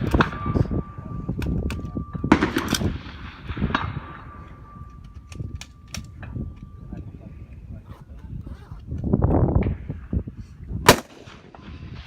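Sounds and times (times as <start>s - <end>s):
rifle shots: 10.9s - 11.9s.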